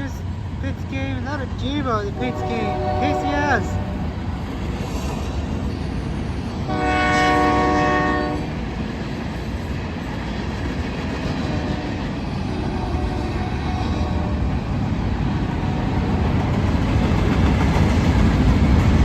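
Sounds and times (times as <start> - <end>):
freight train rumbling past: 0.0 - 19.0
locomotive horn blast: 2.2 - 4.1, 6.7 - 8.5.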